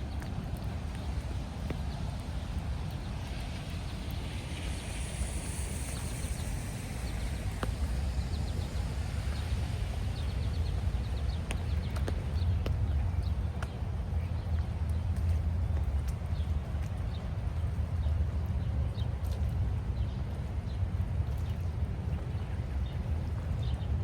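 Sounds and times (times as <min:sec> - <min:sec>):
footsteps on wet path: 0:00.0 - 0:13.8
wind rumble on microphone: 0:00.0 - 0:24.0.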